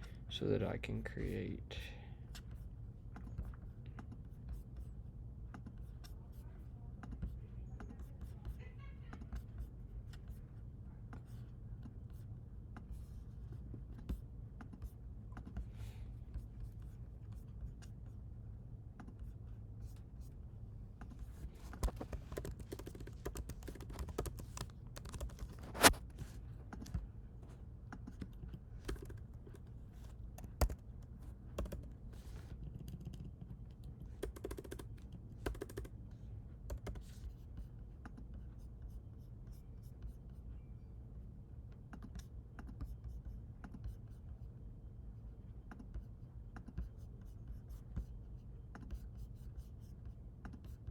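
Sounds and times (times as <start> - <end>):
steady low hum: 9.5 - 39.5
typing on computer keyboard: 21.6 - 26.0, 28.0 - 36.0, 36.7 - 37.4.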